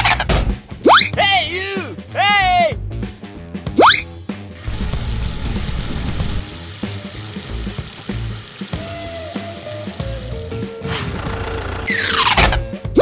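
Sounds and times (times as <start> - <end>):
steady hissing noise: 4.6 - 10.8.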